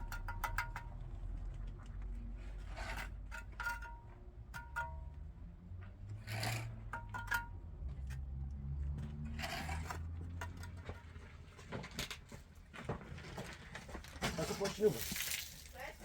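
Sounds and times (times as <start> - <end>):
hand tool scraping hard surface: 14.2 - 15.2.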